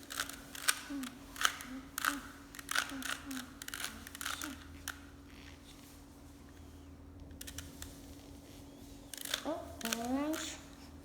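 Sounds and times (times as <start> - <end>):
faint steady hum: 0.0 - 11.0
plastic puzzle cube clicking: 0.1 - 5.0.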